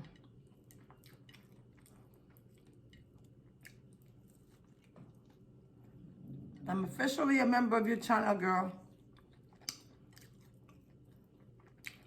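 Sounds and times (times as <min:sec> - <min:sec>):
faint chewing: 0:00.0 - 0:06.7, 0:08.7 - 0:12.0
small mouth clicks: 0:09.6 - 0:10.3.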